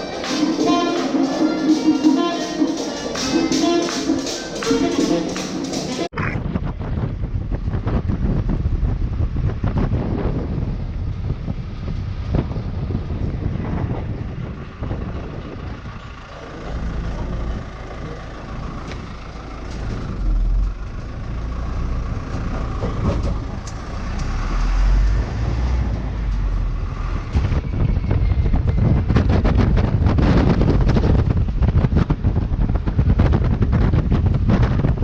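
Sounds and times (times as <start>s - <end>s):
ship engine rumble: 6.0s - 35.0s
wind buffeting microphone: 6.1s - 16.9s, 19.9s - 35.0s.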